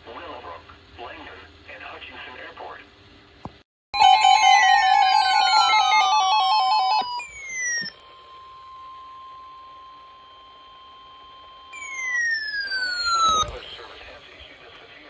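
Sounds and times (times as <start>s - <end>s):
electronic falling sweep: 4.0s - 7.9s, 11.8s - 13.8s
faint steady beep tone: 11.8s - 13.8s.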